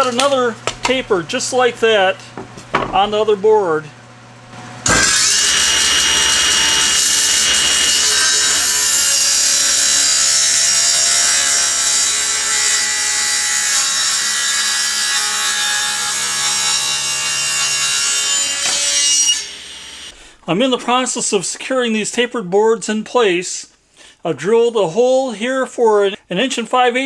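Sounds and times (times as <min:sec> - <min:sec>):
table saw cutting wood: 0:00.0 - 0:03.4, 0:04.5 - 0:20.2.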